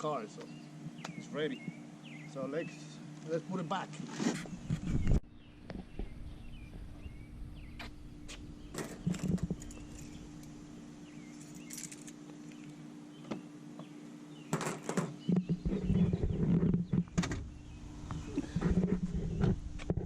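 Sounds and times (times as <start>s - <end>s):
faint steady hum: 0.0s - 20.0s
clicks and knocks of parts: 11.4s - 12.8s.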